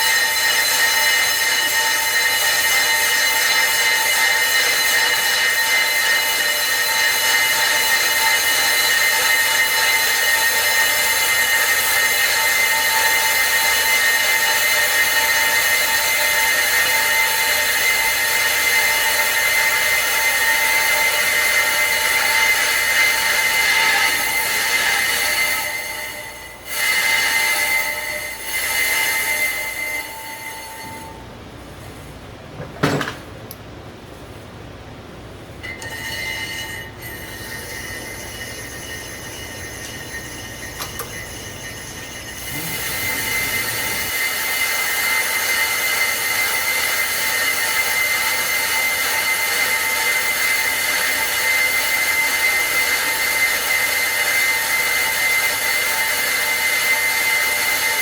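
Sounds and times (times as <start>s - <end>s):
brake disc squealing: 35.6s - 46.5s.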